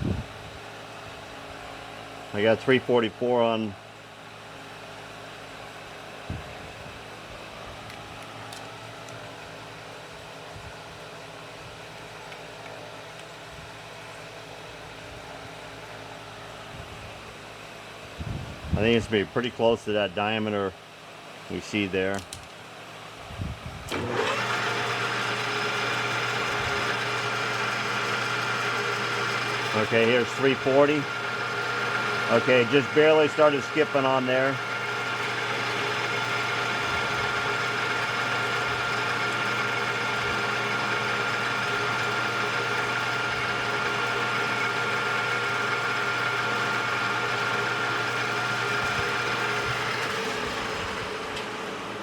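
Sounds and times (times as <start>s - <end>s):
metal lathe humming: 23.9s - 52.0s.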